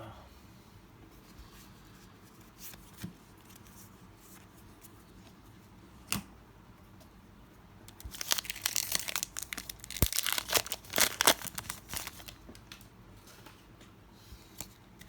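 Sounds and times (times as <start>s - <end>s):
foil wrapper crinkling and tearing: 7.9s - 12.8s.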